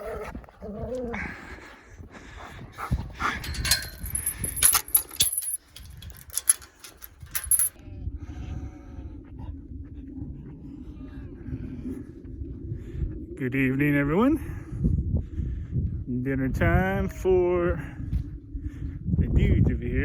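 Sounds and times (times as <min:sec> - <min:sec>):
steady low hum: 0:01.2 - 0:20.0
sharp clicks and jingling rattles: 0:03.2 - 0:07.8.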